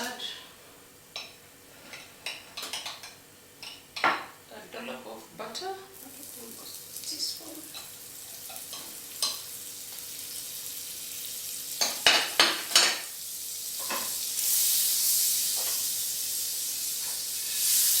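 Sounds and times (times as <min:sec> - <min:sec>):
butter sizzling in a frying pan: 0:05.9 - 0:18.0.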